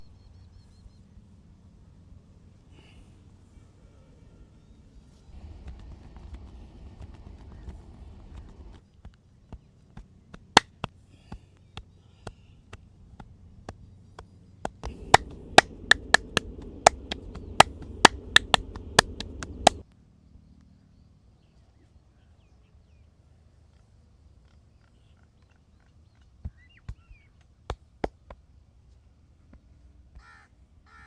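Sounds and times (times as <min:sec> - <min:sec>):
low rumble: 0:14.8 - 0:19.8
hands slapping in massage: 0:14.9 - 0:19.8.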